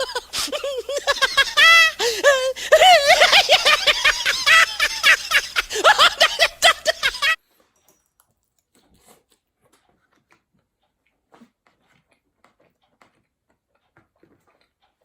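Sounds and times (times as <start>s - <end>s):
mouth clicks from chewing: 8.2s - 15.0s.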